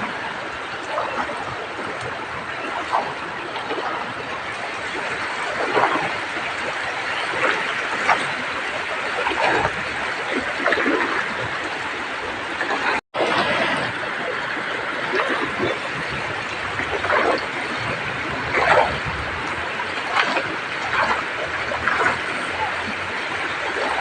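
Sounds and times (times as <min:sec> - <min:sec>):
heavy rain pouring: 0:00.0 - 0:24.0
water splashes: 0:00.0 - 0:24.0.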